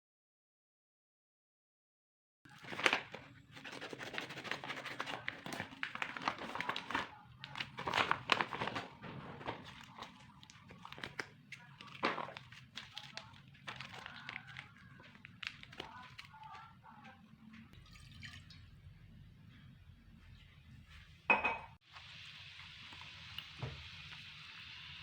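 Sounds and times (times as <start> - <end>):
plastic packaging crinkling: 2.5 - 16.7.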